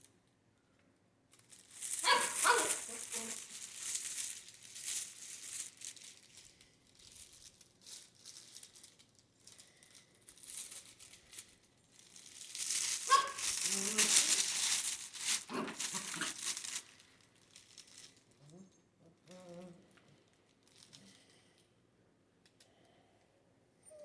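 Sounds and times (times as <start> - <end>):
toys crinkling and rattling: 1.3 - 21.7.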